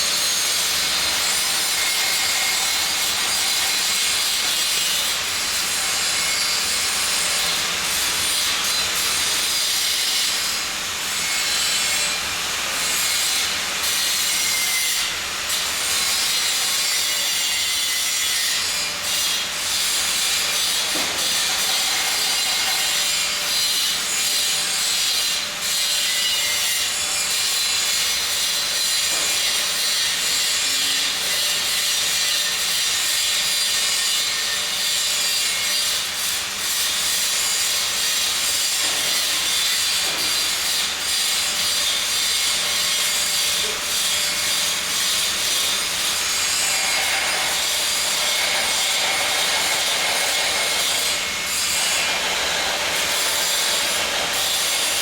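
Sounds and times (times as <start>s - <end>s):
welding arc crackling: 45.1s - 55.0s.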